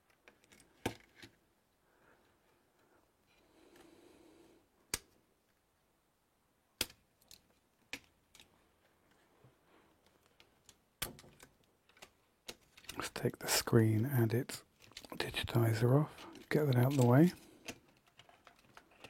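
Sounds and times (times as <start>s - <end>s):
clicks of small tools and plastic: 0.0s - 1.4s, 10.0s - 13.2s, 14.7s - 19.0s.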